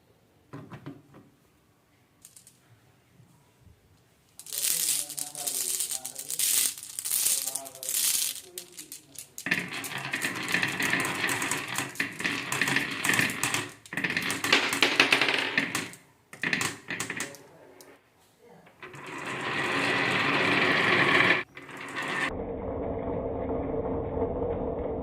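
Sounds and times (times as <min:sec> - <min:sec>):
marbles clacking down a marble run: 0:04.4 - 0:18.0, 0:18.8 - 0:22.3.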